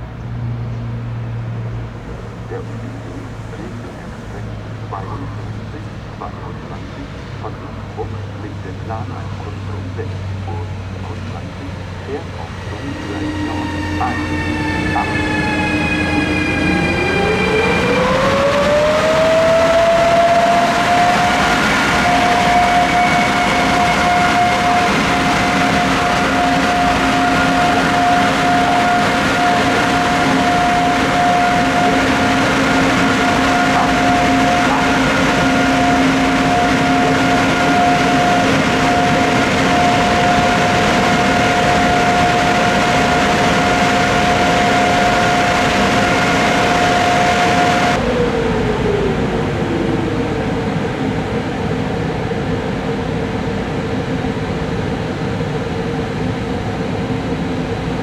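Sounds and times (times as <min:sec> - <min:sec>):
freight wagons rumbling: 0:00.0 - 0:50.4
train wheels squealing: 0:10.5 - 0:48.0
tone falling in pitch: 0:11.2 - 0:18.5.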